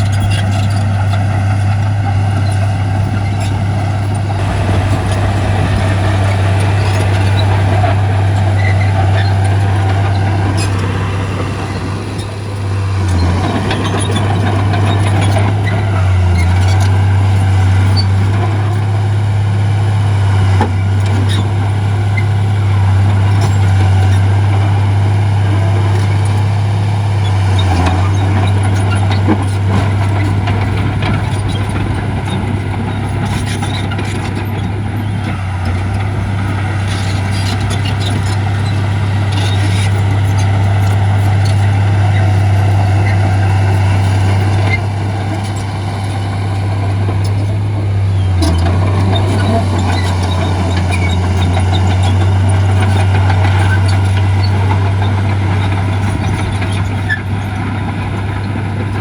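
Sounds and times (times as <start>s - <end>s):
heavy machinery engine drone: 0.0s - 59.0s
knocks and clanks: 3.2s - 12.4s.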